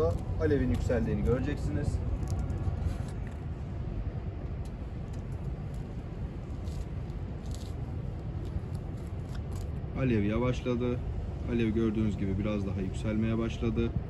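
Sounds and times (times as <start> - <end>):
stove burning low rumble: 0.0 - 14.0.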